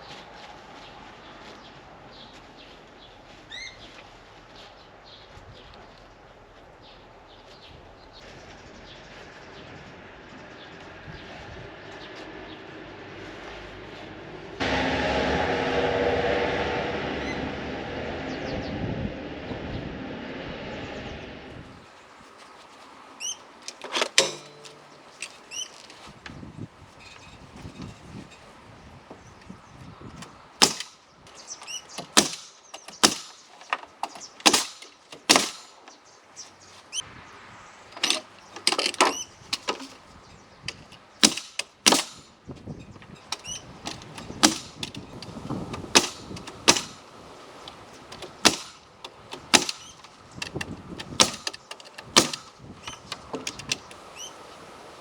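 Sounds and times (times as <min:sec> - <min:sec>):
sharp wooden knocks: 0:30.6 - 0:31.0, 0:32.0 - 0:35.9, 0:41.2 - 0:42.3, 0:43.9 - 0:47.0, 0:48.2 - 0:54.0.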